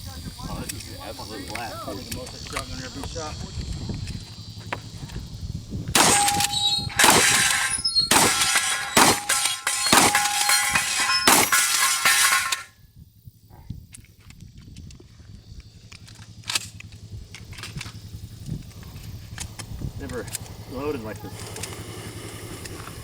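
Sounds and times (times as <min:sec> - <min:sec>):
shotgun shots: 0:06.0 - 0:11.6
steel targets ringing: 0:06.0 - 0:12.7.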